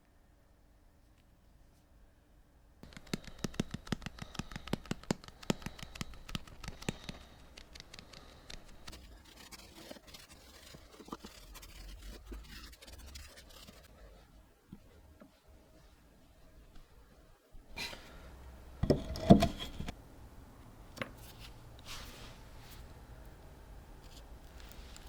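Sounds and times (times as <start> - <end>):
soft irregular scraping and handling: 4.4 - 20.0, 21.0 - 23.1, 23.9 - 25.0.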